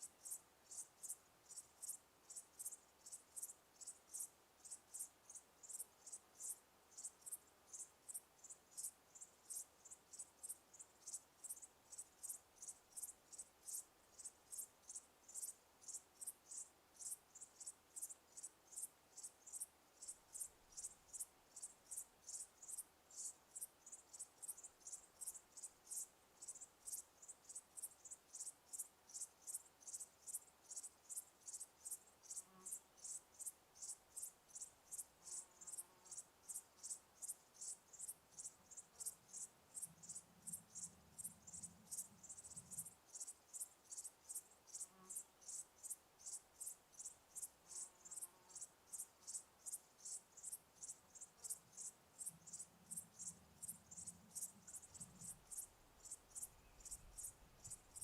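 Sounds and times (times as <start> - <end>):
crickets chirping: 0.0 - 58.0.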